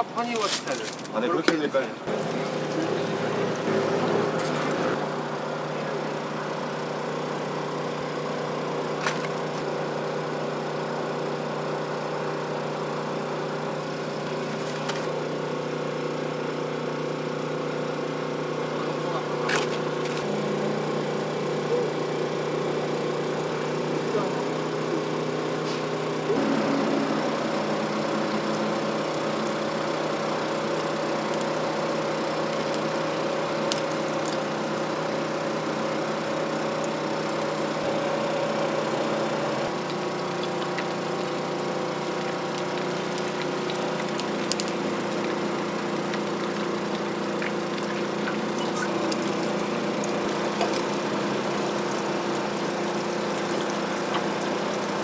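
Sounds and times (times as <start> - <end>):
motor hum: 0.0 - 55.0.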